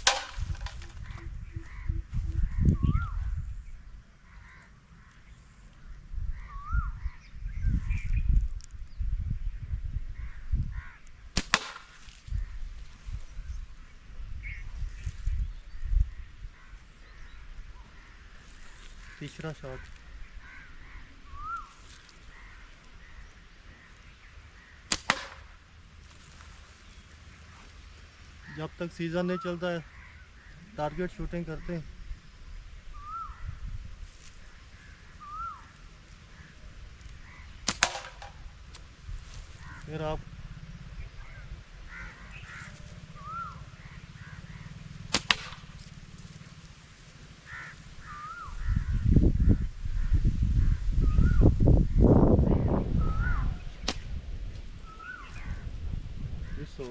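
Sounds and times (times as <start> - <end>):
ball landing crack: 0.0 - 1.2, 11.4 - 12.2, 24.9 - 25.6, 37.6 - 38.9, 45.1 - 45.9, 53.8 - 54.2
wind buffeting microphone: 0.0 - 4.2, 5.8 - 11.4, 12.2 - 18.3, 30.5 - 56.9
birds calling: 0.0 - 56.9.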